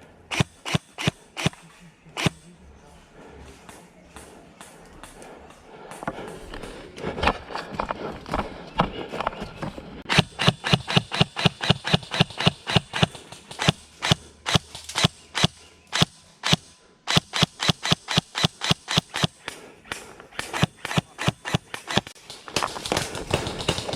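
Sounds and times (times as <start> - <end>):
airsoft gun firing single shots: 0.3 - 1.6, 10.1 - 19.3.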